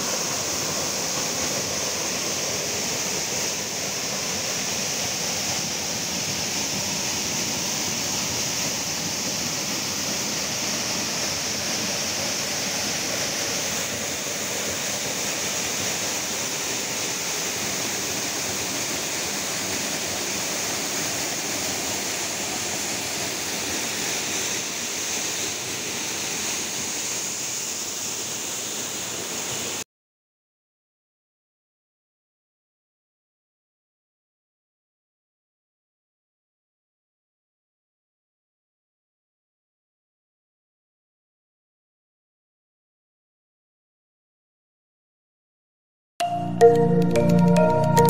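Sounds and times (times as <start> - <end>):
waterfall rushing: 0.0 - 29.8.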